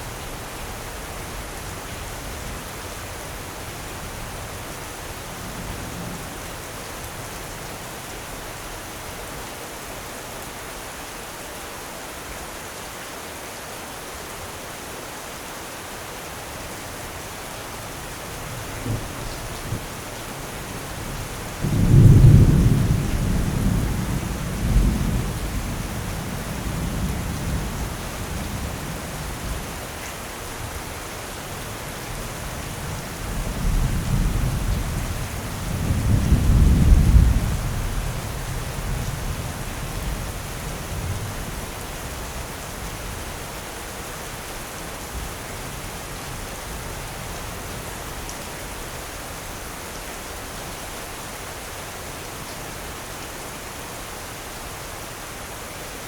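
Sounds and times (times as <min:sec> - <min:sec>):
heavy rain: 0:00.0 - 0:56.0
thunder rumbling: 0:18.7 - 0:29.6, 0:32.8 - 0:40.2.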